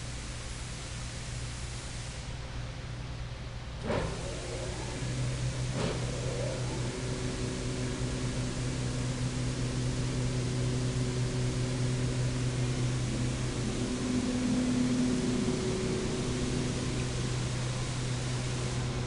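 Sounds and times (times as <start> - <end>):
blast machine motor hum: 3.8 - 19.0
higher machine hum: 3.8 - 19.0.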